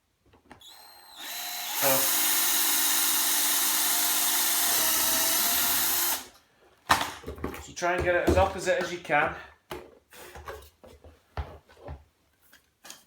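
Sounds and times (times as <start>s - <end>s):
power drill boring plastic: 0.6s - 6.4s.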